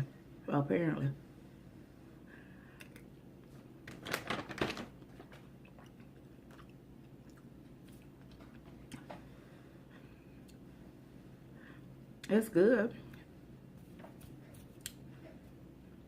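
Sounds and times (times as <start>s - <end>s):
person chewing wetly: 5.5s - 9.1s.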